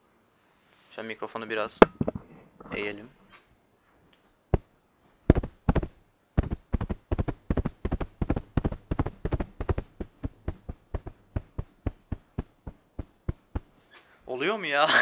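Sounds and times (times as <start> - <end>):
pillow thumps like hoofbeats: 5.3 - 13.8.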